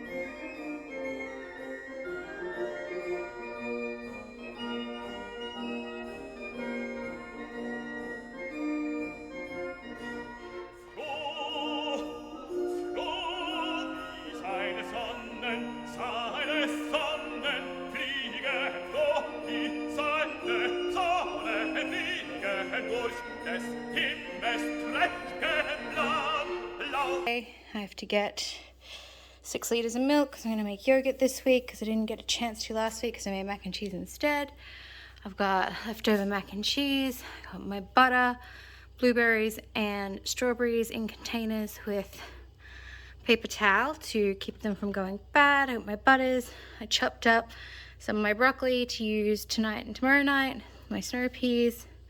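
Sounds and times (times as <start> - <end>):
keyboard chords: 0.0 - 27.3
high melody with vibrato: 0.0 - 27.4.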